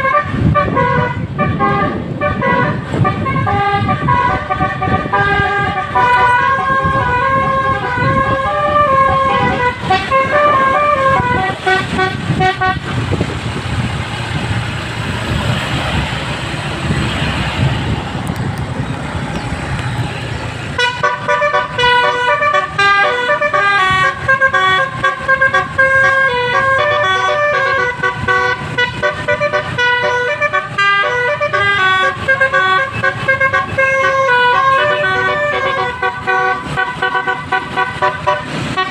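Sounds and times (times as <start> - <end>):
bus horn playing a melody: 0.0 - 13.2, 20.7 - 38.9
rushing noise: 0.0 - 38.9
low rumble: 0.5 - 20.8.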